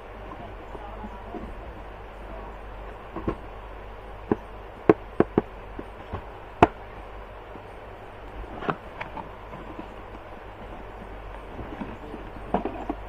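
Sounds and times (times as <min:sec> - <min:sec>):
low steady hum: 0:00.0 - 0:13.0
sharp clicks and knocks: 0:04.2 - 0:06.8.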